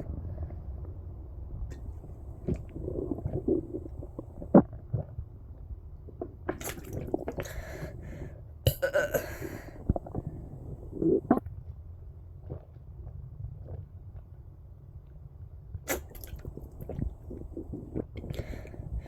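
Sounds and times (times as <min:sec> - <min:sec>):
water sloshing: 0:01.7 - 0:04.6, 0:06.5 - 0:11.4, 0:15.9 - 0:19.0
water swallowing clicks: 0:01.7 - 0:04.7, 0:06.5 - 0:11.4, 0:15.9 - 0:19.0.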